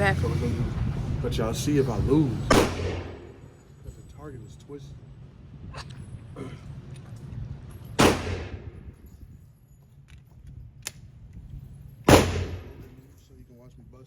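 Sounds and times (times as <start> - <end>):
pistol shots echoing: 2.5 - 3.5, 8.0 - 8.9, 12.1 - 13.0.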